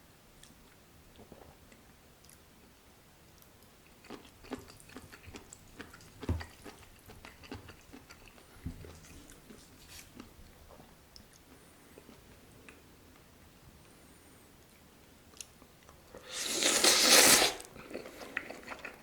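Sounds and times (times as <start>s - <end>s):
wet chewing with mouth clicks: 3.4s - 12.8s, 14.6s - 19.0s.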